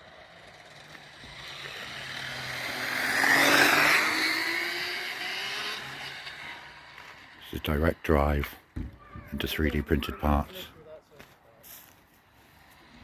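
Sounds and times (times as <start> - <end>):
rc car motor whine: 0.0 - 7.5.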